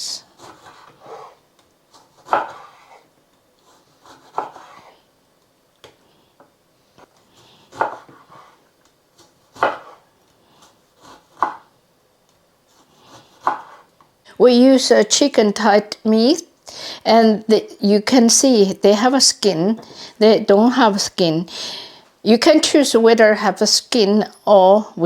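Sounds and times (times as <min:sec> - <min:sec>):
knife slicing lemon on board: 0:00.4 - 0:03.0, 0:03.6 - 0:04.9, 0:07.7 - 0:08.6, 0:09.2 - 0:10.0, 0:10.6 - 0:11.7, 0:13.1 - 0:13.9.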